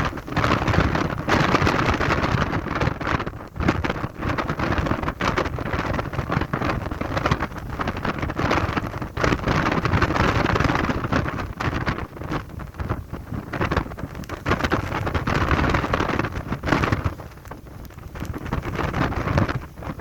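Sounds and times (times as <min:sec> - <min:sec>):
gusty wind buffeting microphone: 0:00.0 - 0:20.0.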